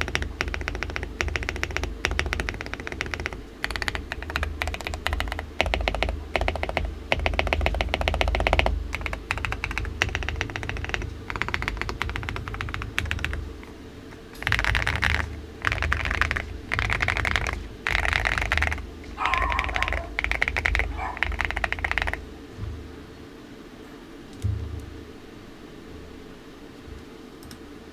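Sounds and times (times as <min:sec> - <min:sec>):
fast typing on mechanical keyboard: 0:00.0 - 0:13.6, 0:14.4 - 0:22.2.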